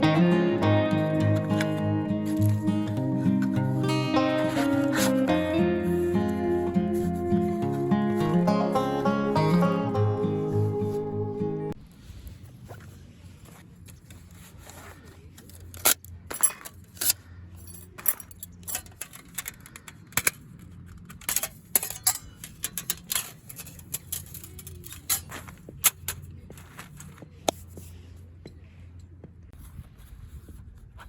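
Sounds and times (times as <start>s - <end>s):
metal camping gear clinking: 4.2s - 7.2s, 15.4s - 26.3s.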